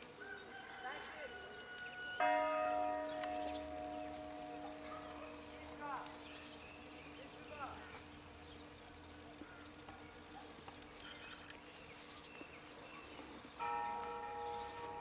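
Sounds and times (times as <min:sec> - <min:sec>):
small birds chirping: 0:03.0 - 0:15.0.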